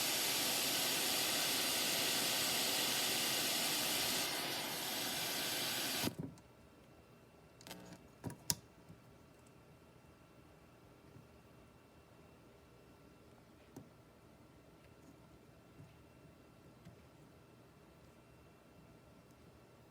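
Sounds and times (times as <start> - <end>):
loud hissing white noise: 0.0 - 6.2.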